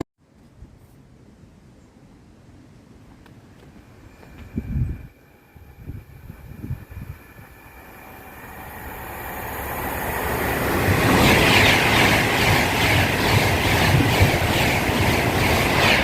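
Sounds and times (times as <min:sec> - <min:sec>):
train passing at speed: 0:03.7 - 0:16.0
rhythm of train wheels: 0:04.2 - 0:16.0.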